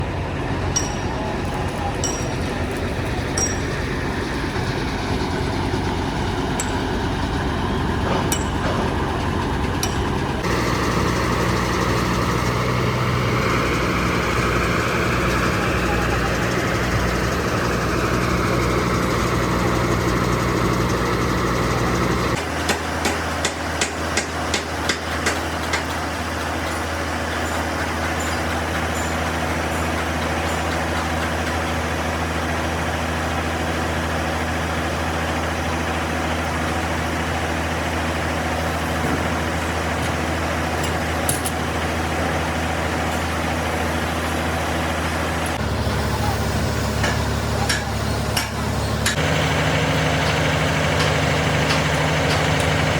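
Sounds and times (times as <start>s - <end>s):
large engine running: 0.0s - 52.9s
sharp metallic knocks: 3.4s - 3.8s, 8.0s - 10.2s, 22.4s - 26.0s, 26.6s - 31.6s.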